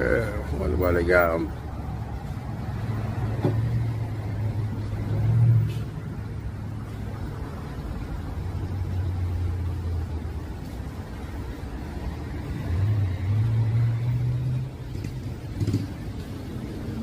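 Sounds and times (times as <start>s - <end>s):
car engine humming: 0.0s - 17.0s.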